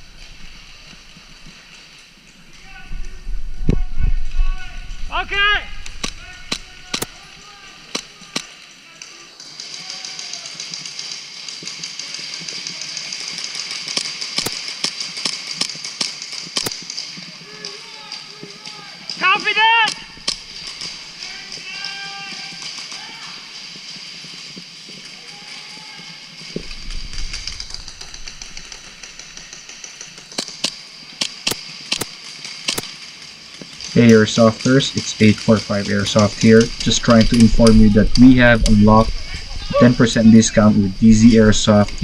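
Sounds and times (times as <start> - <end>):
electric airsoft guns rattling: 0.0 - 42.0
steady high hiss: 0.0 - 42.0
low rumble of movement: 2.3 - 7.3
sharp cracks of shots and hits: 5.1 - 17.8, 19.4 - 24.8, 27.2 - 39.1
airsoft gun shots: 5.2 - 8.6, 13.7 - 17.0, 26.6 - 33.0.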